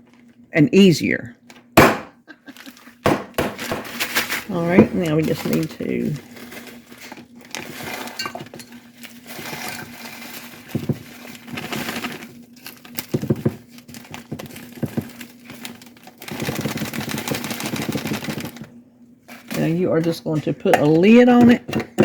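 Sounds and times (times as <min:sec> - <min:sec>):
plastic bag crinkling: 0:02.4 - 0:03.0, 0:03.6 - 0:18.7, 0:19.3 - 0:20.6.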